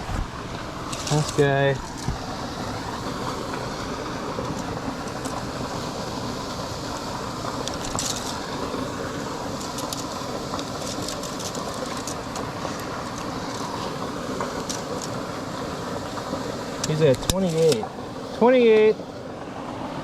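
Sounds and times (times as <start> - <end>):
water rushing through spillway: 0.0 - 20.0.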